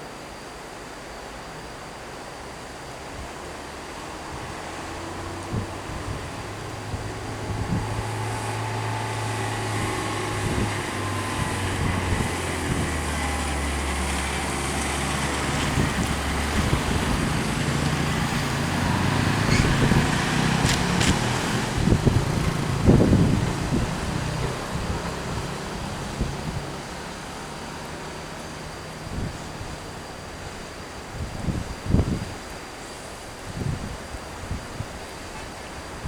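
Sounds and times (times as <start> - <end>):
heavy vehicle engine droning: 1.2 - 34.4.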